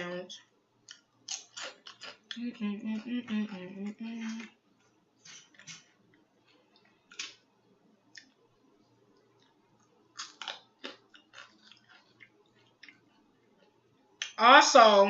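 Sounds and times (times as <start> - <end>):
wet lip smacks and chewing: 8.1 - 8.4, 9.2 - 13.2.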